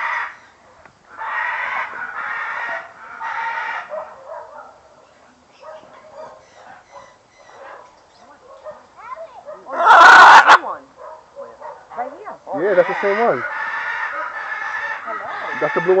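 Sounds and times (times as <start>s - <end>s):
parrot screeching: 1.1s - 3.9s, 9.7s - 10.6s, 12.6s - 16.0s
thin bird calls: 5.0s - 9.2s.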